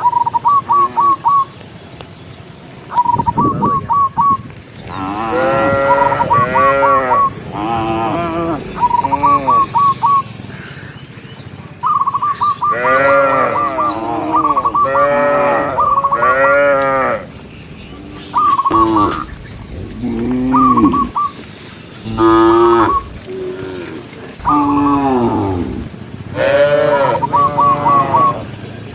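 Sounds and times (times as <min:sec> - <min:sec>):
cows mooing: 0:04.8 - 0:10.7, 0:12.6 - 0:28.9.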